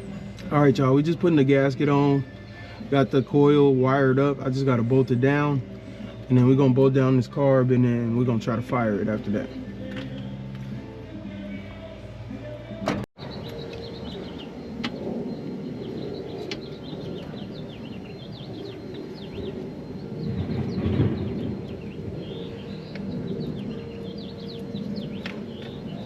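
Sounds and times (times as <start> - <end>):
music with long low notes: 0.0 - 26.0
small birds chirping: 13.2 - 26.0.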